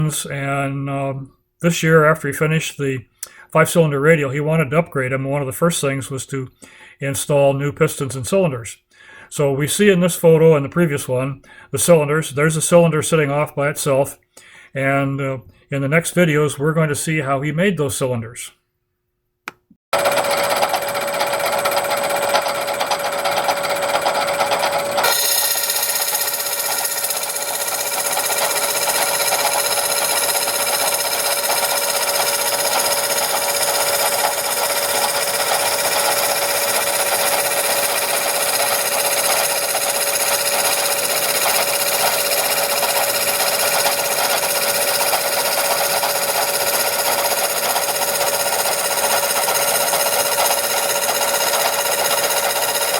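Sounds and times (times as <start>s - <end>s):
machine tool whining and chattering: 20.0s - 52.9s.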